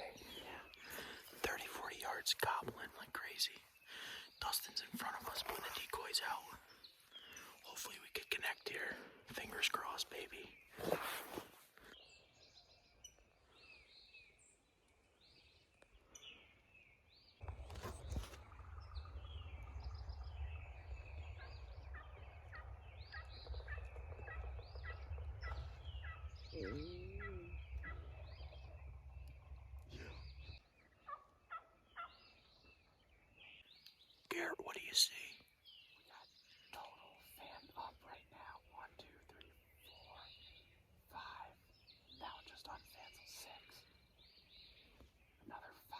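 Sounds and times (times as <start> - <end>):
songbirds chirping: 0.0 - 45.9
low steady rumble: 17.4 - 30.6
wild turkeys gobbling: 21.4 - 29.2.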